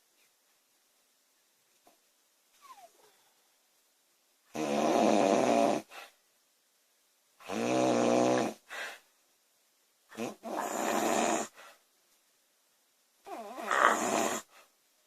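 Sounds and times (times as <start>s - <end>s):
soft breath: 2.6s - 3.7s, 8.6s - 9.2s, 11.5s - 11.9s
woman snoring: 4.5s - 5.9s, 7.4s - 8.6s, 10.1s - 11.6s, 13.3s - 14.5s.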